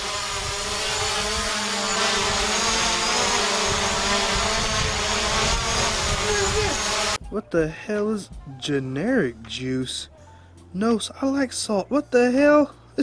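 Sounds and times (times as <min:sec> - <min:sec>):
drone propellers buzzing: 0:00.0 - 0:07.2.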